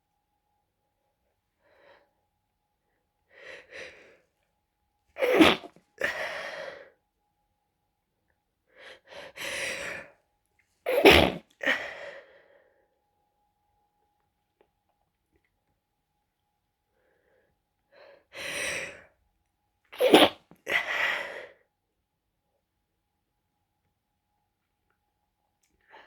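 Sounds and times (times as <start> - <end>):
person sneezing: 5.2 - 6.4, 10.9 - 11.9, 20.0 - 21.2.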